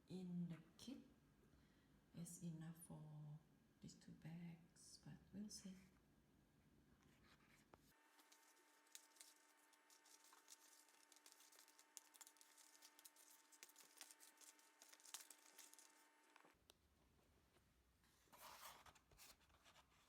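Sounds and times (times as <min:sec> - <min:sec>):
rope rustling in a bag: 0:07.9 - 0:16.3.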